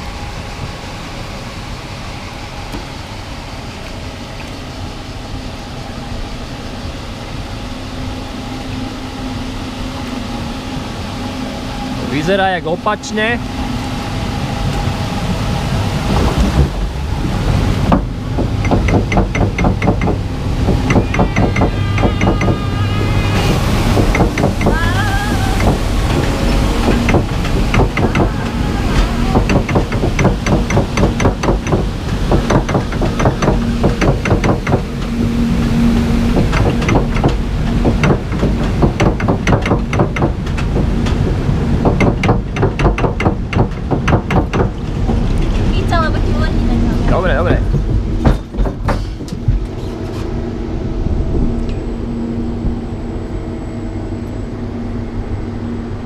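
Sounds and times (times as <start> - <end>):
rushing water: 0.0 - 52.5
ride machinery rumbling: 0.0 - 56.0
fast regular clacks: 17.9 - 22.6, 26.8 - 28.4, 29.4 - 34.9, 36.4 - 41.2.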